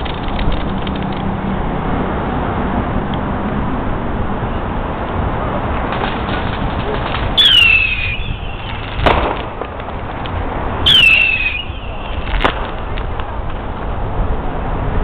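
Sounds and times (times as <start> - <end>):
firework bang: 6.0 - 10.2, 10.8 - 13.4
firework whistle: 7.4 - 9.4, 10.8 - 12.9.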